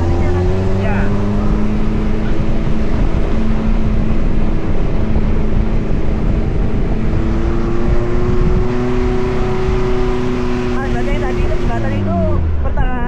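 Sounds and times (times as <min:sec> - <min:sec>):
car engine running while driving: 0:00.0 - 0:13.0.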